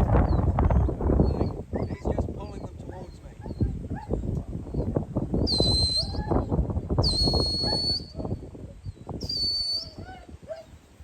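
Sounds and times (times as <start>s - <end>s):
shrill whistle blasts: 5.4s - 6.3s, 7.0s - 8.2s, 9.2s - 10.0s.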